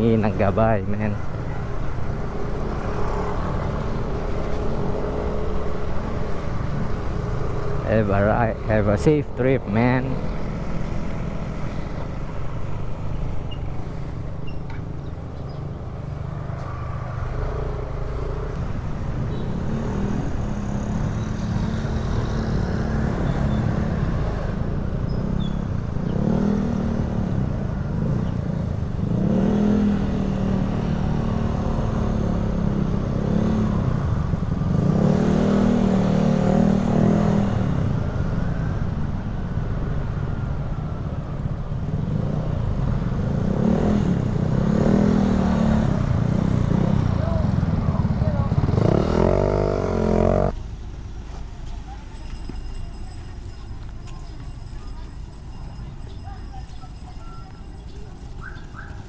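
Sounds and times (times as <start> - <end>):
wind and road rumble: 0.0 - 59.0
motorcycle engine accelerating: 19.3 - 39.6, 41.8 - 50.6.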